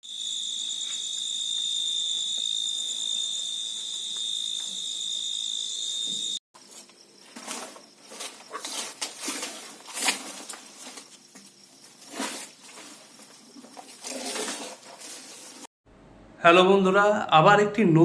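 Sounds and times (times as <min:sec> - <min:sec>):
insects chirring: 0:00.0 - 0:15.5
rustling and crackling: 0:06.6 - 0:15.7.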